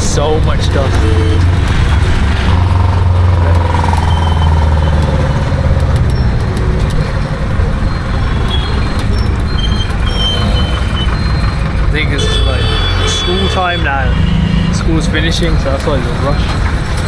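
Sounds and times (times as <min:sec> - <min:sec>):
engine and road rumble: 0:00.0 - 0:17.0
car horn beeps: 0:00.9 - 0:01.5, 0:12.1 - 0:14.8.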